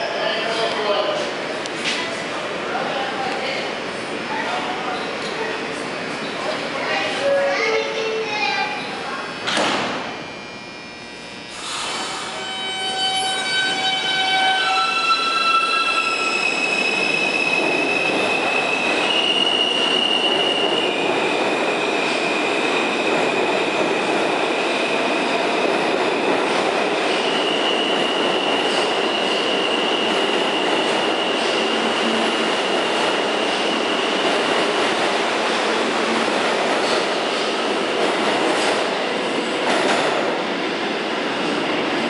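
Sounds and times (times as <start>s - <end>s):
high electric whine: 9.0s - 13.9s
train wheels rolling on rail: 13.5s - 42.0s.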